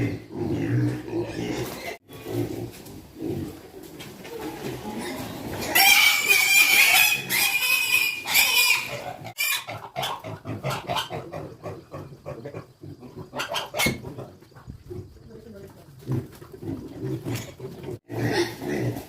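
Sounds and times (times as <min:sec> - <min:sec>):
piglets grunting: 0:04.4 - 0:15.0
piglets squealing: 0:05.6 - 0:11.4, 0:13.3 - 0:14.1.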